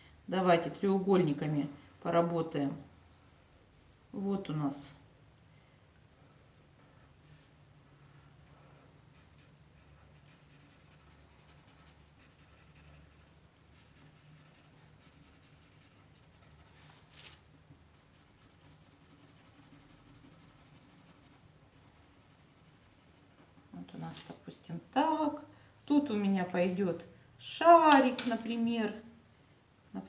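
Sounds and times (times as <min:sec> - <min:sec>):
drawing tool scratching on paper: 0:07.9 - 0:16.8, 0:18.0 - 0:23.5.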